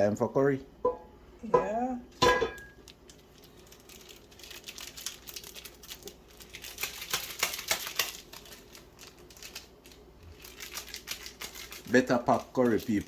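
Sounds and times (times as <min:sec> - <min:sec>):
plastic packet crinkling: 0:02.7 - 0:13.0.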